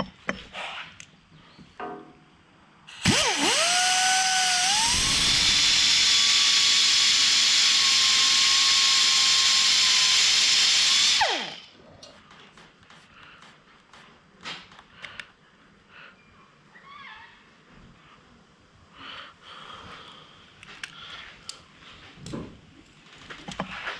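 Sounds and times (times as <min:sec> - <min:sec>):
power tool motor whining: 0:03.0 - 0:11.7.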